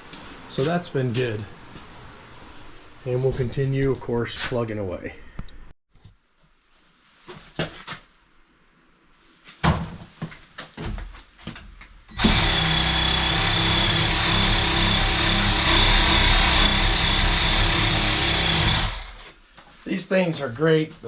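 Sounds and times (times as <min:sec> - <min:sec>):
power tool whining: 0:12.2 - 0:19.4.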